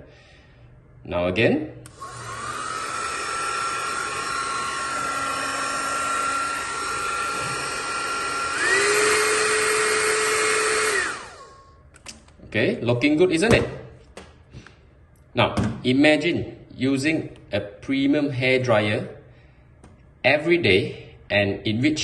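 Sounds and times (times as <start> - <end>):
hot air blower whining: 1.8 - 11.9.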